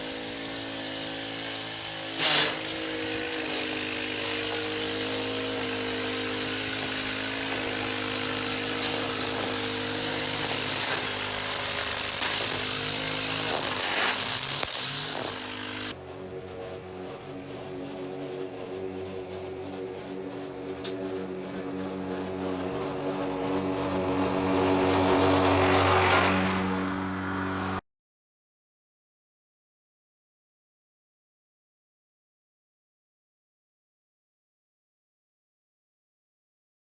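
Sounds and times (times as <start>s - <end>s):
hiss of grass cutting: 0.0s - 27.8s
lawn mower engine running: 0.0s - 27.8s
transmission grinding: 2.7s - 26.9s.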